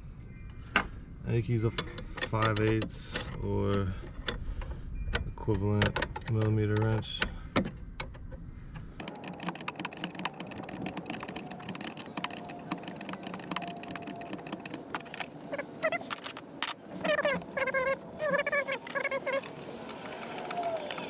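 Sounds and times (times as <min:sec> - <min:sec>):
wrench clicking on metal fittings: 0:09.0 - 0:21.0.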